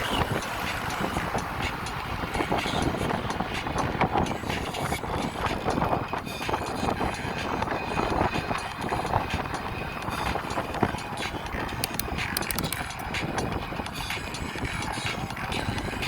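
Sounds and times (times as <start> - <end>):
wind on microphone: 0.0 - 16.0
bicycle clicks and rattles: 11.6 - 13.1.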